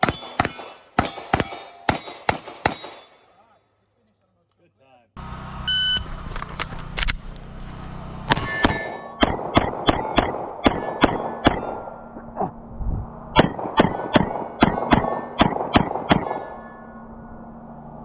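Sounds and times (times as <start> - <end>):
pistol shots: 0.0 - 3.5, 8.3 - 12.2, 13.4 - 16.9
bullets ringing steel targets: 0.0 - 3.6, 8.3 - 12.4, 13.4 - 17.1.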